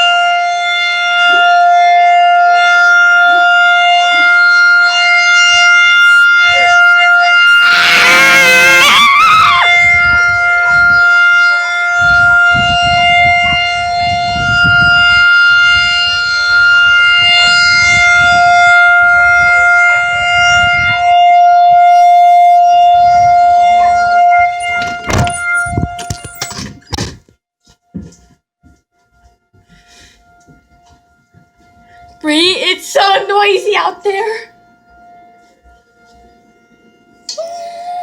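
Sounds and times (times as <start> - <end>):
warning siren held tone: 0.0 - 26.9, 27.7 - 38.0
low gusty rumble: 8.3 - 11.1, 11.9 - 21.8.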